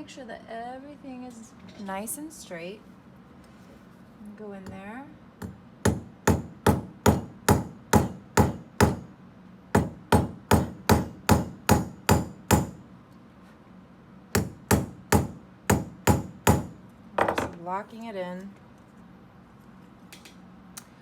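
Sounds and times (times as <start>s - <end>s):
hammer on metal rivet: 5.4s - 9.1s, 9.8s - 12.8s, 14.4s - 17.5s.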